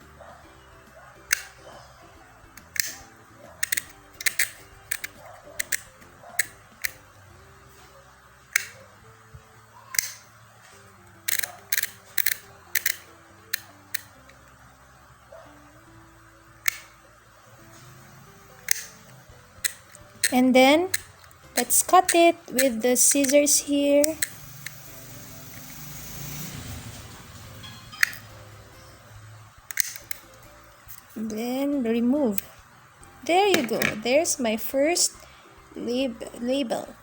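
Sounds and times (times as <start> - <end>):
soft background music: 0.0 - 37.0.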